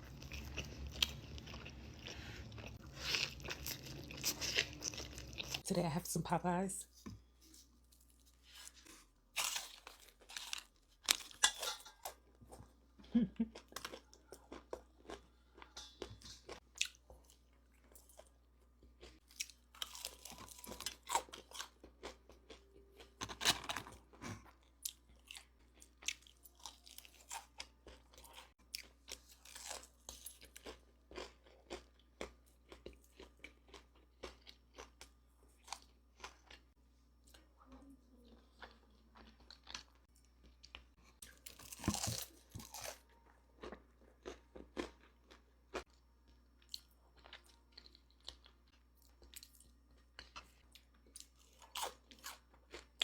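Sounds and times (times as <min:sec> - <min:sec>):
crunchy food chewing: 0:00.0 - 0:05.6, 0:07.9 - 0:12.7, 0:13.5 - 0:37.5, 0:38.3 - 0:53.0.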